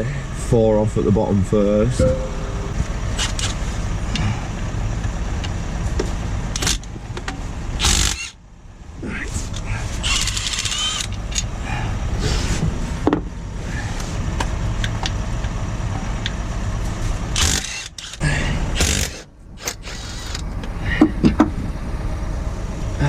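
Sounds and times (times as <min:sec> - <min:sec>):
steady low hum: 0:00.0 - 0:23.0
sharp metallic clicks: 0:02.0 - 0:04.3, 0:06.5 - 0:08.4, 0:10.0 - 0:11.5, 0:17.4 - 0:18.2
power tool running in bursts: 0:03.2 - 0:03.6, 0:17.4 - 0:18.2, 0:18.8 - 0:20.4.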